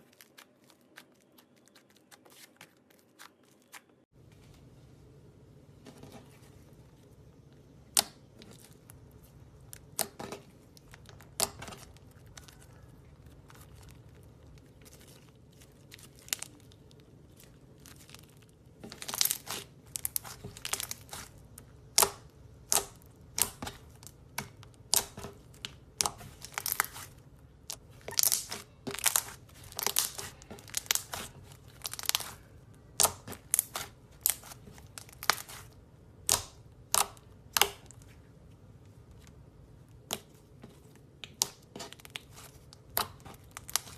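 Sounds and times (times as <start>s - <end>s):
slime crackling and popping: 0.0s - 4.0s, 7.9s - 38.1s, 41.0s - 43.9s.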